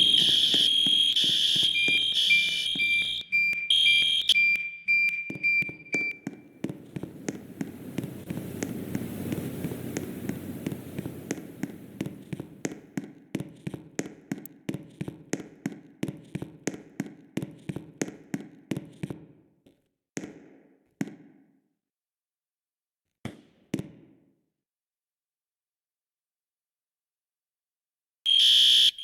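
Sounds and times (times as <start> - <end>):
fire alarm bell ringing: 0.0 - 6.4, 28.3 - 29.0.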